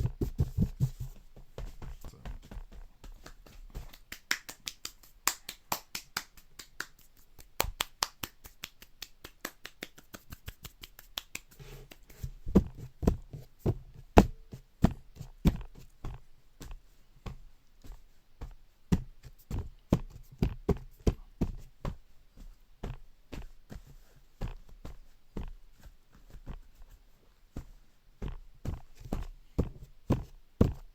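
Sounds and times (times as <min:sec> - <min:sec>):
person making clicking sounds: 0:01.8 - 0:12.9.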